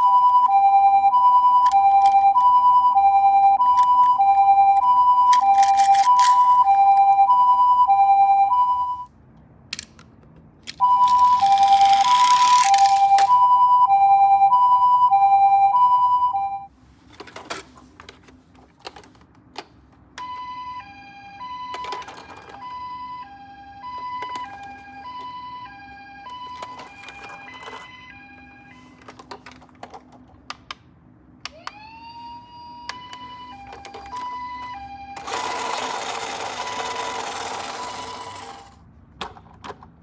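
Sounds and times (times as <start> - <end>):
toy electronic two-tone siren: 0.0 - 9.1, 10.8 - 16.7, 20.2 - 29.0, 31.5 - 38.8.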